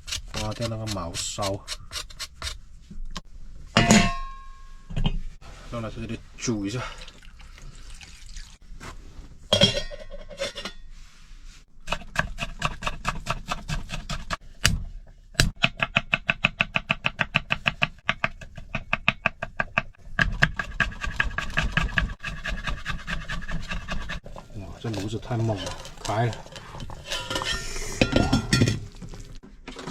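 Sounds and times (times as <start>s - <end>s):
metal cookware clattering: 3.8s - 4.8s, 9.5s - 10.9s, 24.8s - 29.9s.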